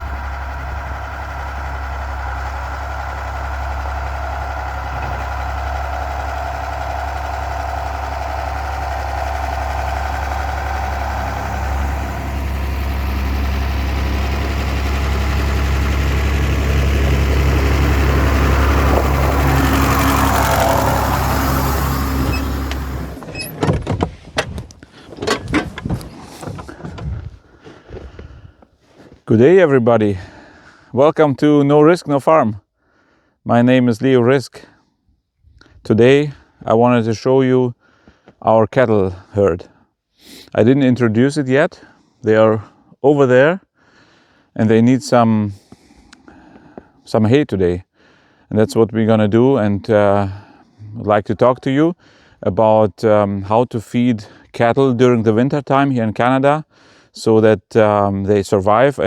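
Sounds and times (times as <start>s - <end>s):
tractor engine running: 0.0s - 28.4s
sharp knocks and clatters: 22.7s - 27.2s.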